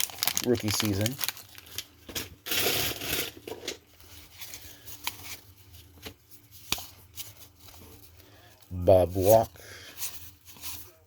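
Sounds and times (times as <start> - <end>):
cards rustling: 0.0 - 1.9.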